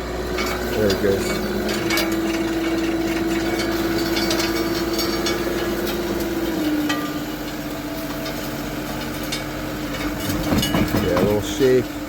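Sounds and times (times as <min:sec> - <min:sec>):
hydraulic machine whine: 0:00.0 - 0:12.0
sharp knocks: 0:10.2 - 0:11.6.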